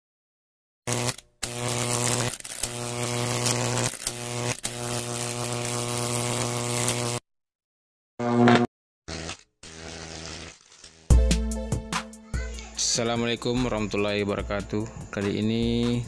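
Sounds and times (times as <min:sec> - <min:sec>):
electric hair clipper buzzing: 0:00.9 - 0:07.2, 0:08.2 - 0:11.2.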